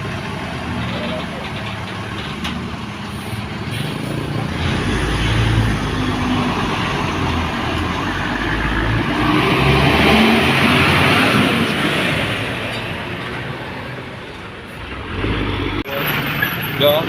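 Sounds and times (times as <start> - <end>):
bus diesel engine running: 0.0 - 17.0
road noise: 0.0 - 17.0.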